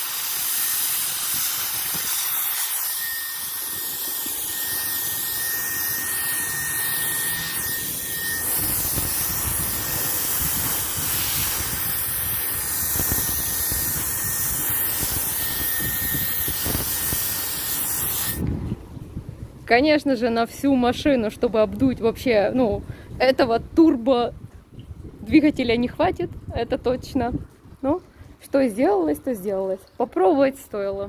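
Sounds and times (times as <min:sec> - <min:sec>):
high motor whine: 0:00.0 - 0:18.5
fan blowing air hiss: 0:00.0 - 0:19.7
wind buffeting microphone: 0:07.5 - 0:29.3.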